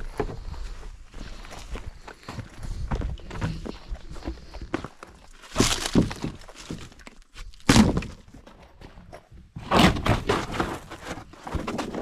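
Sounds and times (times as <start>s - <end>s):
wood thudding and cracking: 5.4s - 12.0s.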